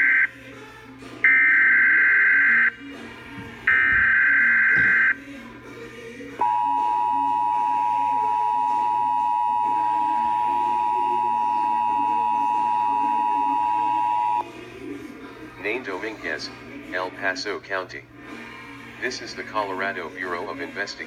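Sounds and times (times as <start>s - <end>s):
two-tone attention signal: 1.2s - 2.8s, 3.7s - 5.2s, 6.4s - 14.4s.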